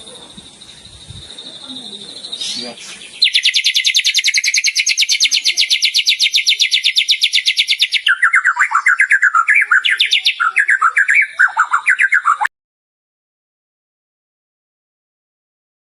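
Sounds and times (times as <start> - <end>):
songbird trilling and warbling: 0.0 - 12.5.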